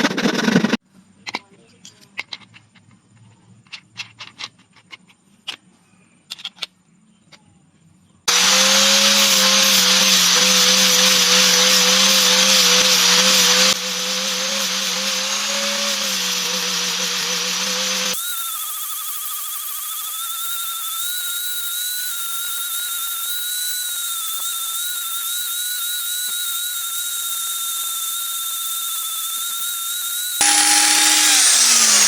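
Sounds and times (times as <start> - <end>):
electric power tool running: 8.3 - 32.0.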